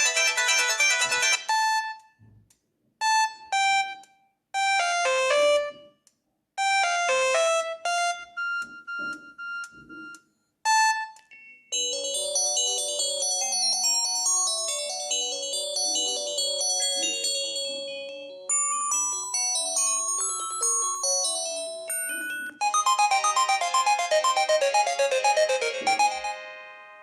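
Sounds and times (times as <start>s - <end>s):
phone ringtone: 0.0s - 2.0s, 10.7s - 27.0s
bell-like chime melodies: 11.3s - 26.5s.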